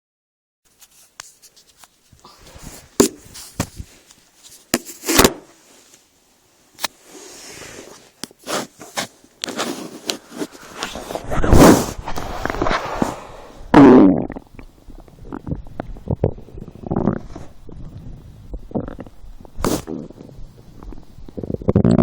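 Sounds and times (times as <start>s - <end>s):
scraping handling noises: 0.7s - 6.1s, 6.8s - 13.2s
stomach gurgling: 10.6s - 22.0s.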